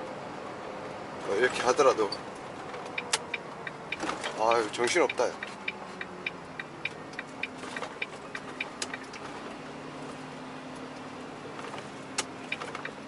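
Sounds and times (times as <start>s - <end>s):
truck cab hum: 0.0s - 13.0s
turn signal ticking: 2.1s - 9.5s, 11.8s - 13.0s.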